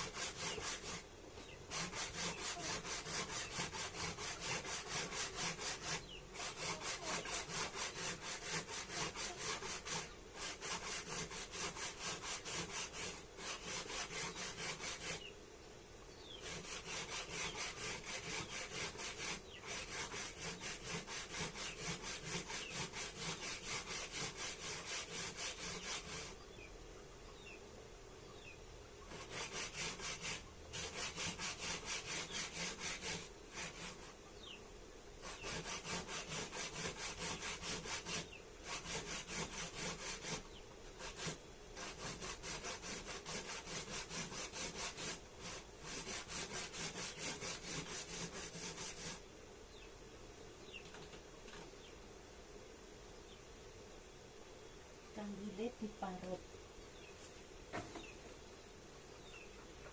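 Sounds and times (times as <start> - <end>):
grater rasping: 1.7 - 15.2, 35.2 - 40.4.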